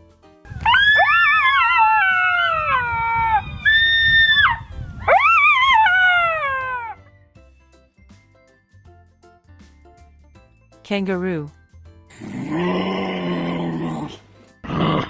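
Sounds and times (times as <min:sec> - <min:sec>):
jackal howling: 0:00.6 - 0:07.0, 0:12.2 - 0:15.0.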